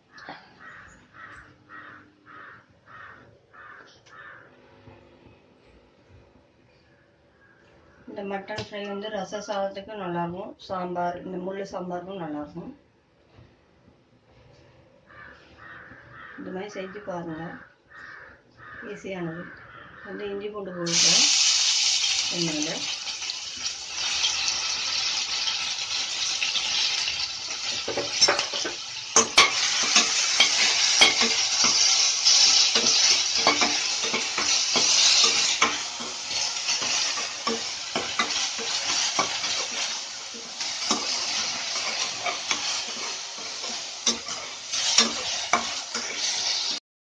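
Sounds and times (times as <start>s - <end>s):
paste sizzling in hot oil: 20.9s - 46.8s.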